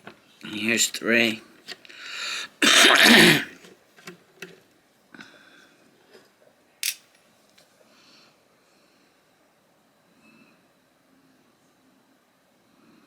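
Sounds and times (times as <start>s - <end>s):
small screws and driver clicking: 6.8s - 7.1s.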